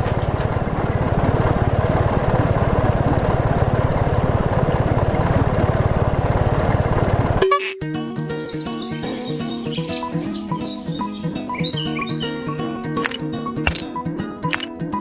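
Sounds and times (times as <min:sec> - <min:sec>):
small engine running: 0:00.0 - 0:07.4.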